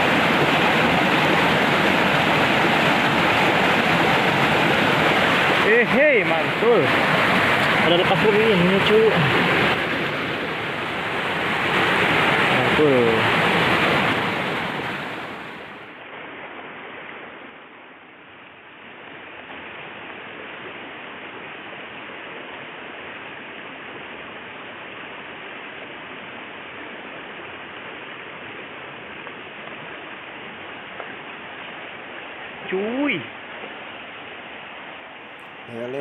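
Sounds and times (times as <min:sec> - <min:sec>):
water rushing in a ditch: 0:00.0 - 0:36.0.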